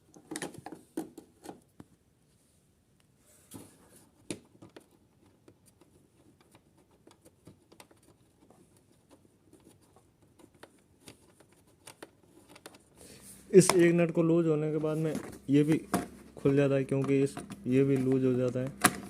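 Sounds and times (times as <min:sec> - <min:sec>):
hand tools clicking and tapping: 0:15.2 - 0:19.0.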